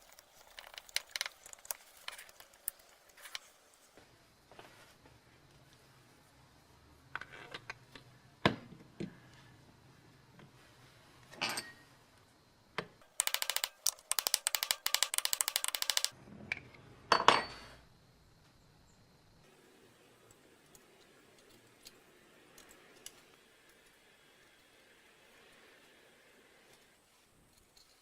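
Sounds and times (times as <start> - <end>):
fast even run of clicks: 13.1 - 16.2
metal parts and tools clicking: 13.1 - 16.2.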